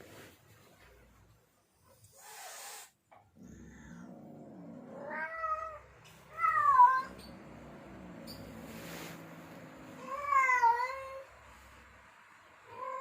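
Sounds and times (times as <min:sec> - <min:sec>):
cat low rumbling: 0:03.3 - 0:13.0
cat yowling: 0:05.0 - 0:07.2.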